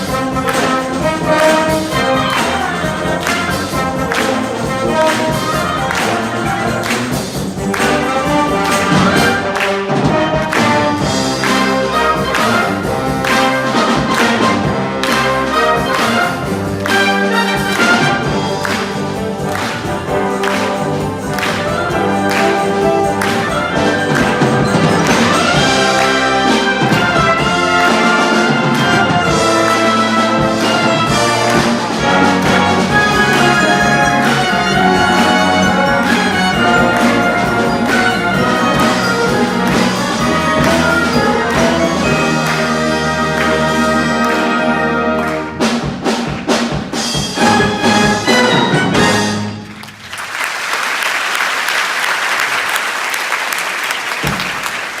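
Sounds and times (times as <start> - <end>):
audience applause: 0.0 - 45.5, 49.6 - 55.0
trumpets and trombones: 0.0 - 46.3, 46.9 - 49.9
wind band playing: 0.0 - 55.0.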